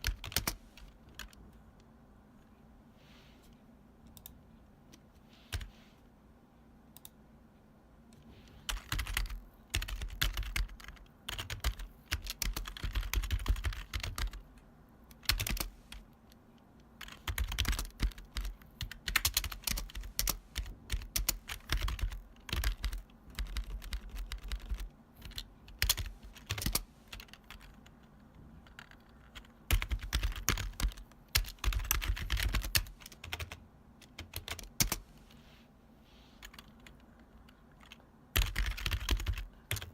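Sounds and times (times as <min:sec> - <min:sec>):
clacky keyboard typing: 0:00.0 - 0:01.5, 0:08.6 - 0:35.0, 0:36.4 - 0:39.9.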